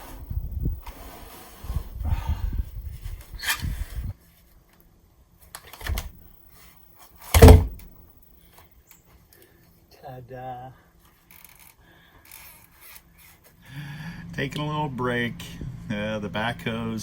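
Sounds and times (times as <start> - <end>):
heavy wooden beam thud: 7.3 - 7.9.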